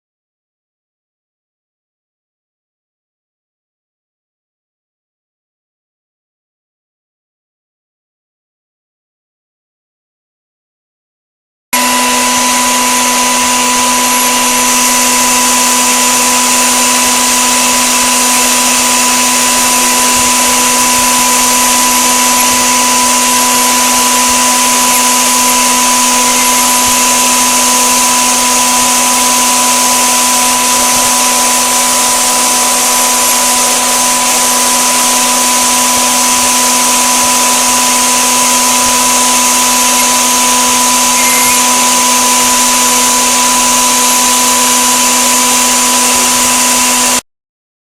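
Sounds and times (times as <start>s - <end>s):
router spindle whining: 11.8s - 47.2s
hiss: 13.1s - 47.0s.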